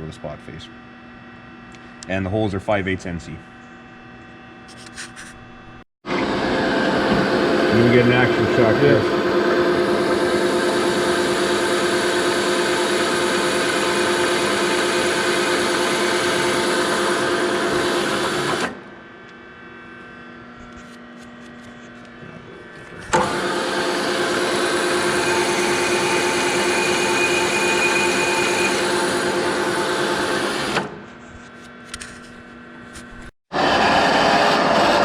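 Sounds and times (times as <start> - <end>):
milling machine cutting metal: 6.1 - 18.8, 22.9 - 31.0, 33.6 - 35.0.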